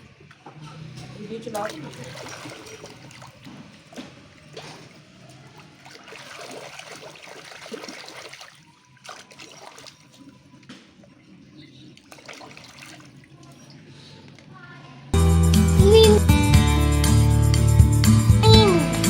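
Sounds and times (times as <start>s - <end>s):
water trickling and splashing: 0.0s - 15.1s.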